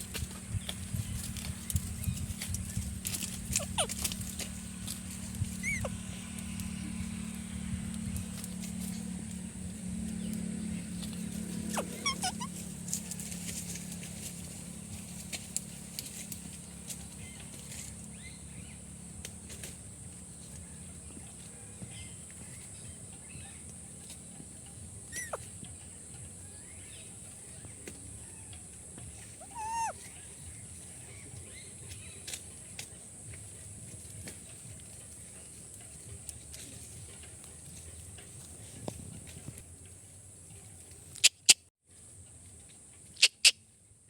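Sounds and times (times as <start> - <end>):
parrot squawking: 3.5 - 4.1, 5.6 - 6.0, 11.6 - 12.6, 25.1 - 25.4, 29.4 - 30.0.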